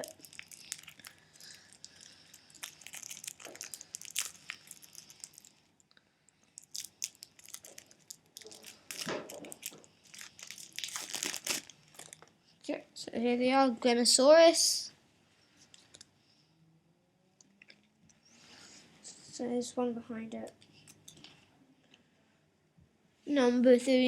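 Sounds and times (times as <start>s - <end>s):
foil wrapper crinkling: 0.0s - 5.6s, 6.6s - 12.2s.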